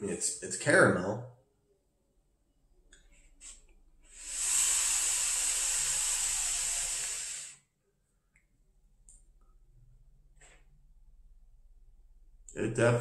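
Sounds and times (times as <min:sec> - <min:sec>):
breathy hiss of vape exhale: 0:03.4 - 0:07.6.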